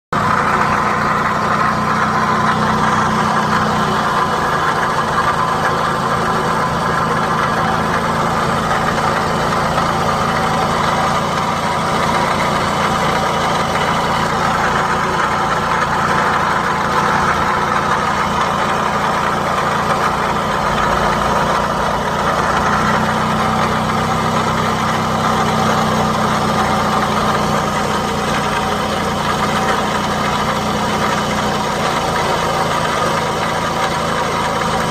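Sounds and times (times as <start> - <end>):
car engine idling: 0.1 - 34.9.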